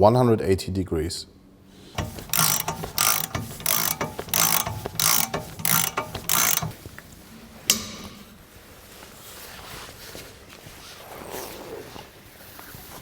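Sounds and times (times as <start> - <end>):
ratchet wrench ratcheting: 1.9 - 6.8
sharp click: 1.9 - 6.8, 7.7 - 8.3.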